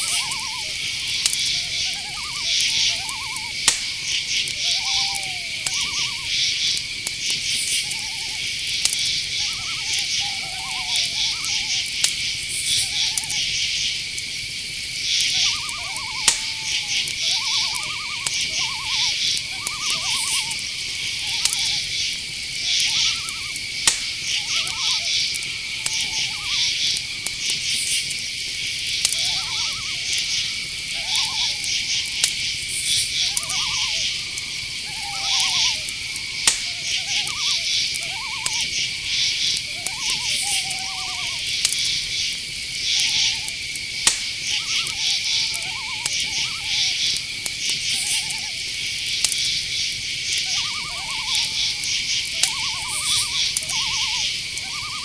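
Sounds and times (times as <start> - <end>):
rising and falling calls: 0.0 - 14.0, 15.0 - 55.0
crickets trilling: 0.0 - 55.0
insects chirping: 0.0 - 55.0
sharp clicks: 3.0 - 4.6, 16.0 - 28.2, 35.5 - 38.8, 44.0 - 46.3.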